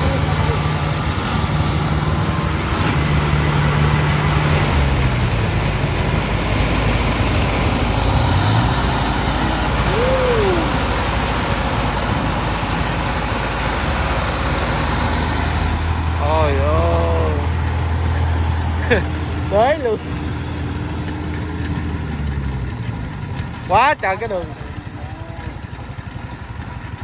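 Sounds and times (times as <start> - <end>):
large harvester engine running: 0.0 - 27.0.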